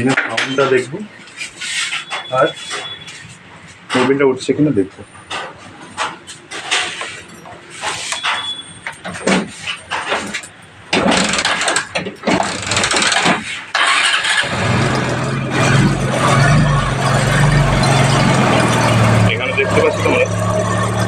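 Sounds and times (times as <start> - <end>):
motorcycle engine cranking: 10.2 - 16.7.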